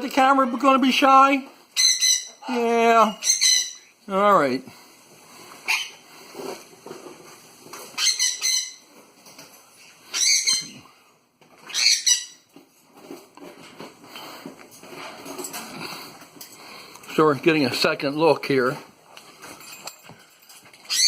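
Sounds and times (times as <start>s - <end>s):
parrot squawking: 1.8s - 4.0s, 5.6s - 6.0s, 7.9s - 8.9s, 10.1s - 10.9s, 11.6s - 12.5s
shrill parrot calls: 1.8s - 4.0s, 5.6s - 6.0s, 7.9s - 8.9s, 10.1s - 10.9s, 11.6s - 12.5s.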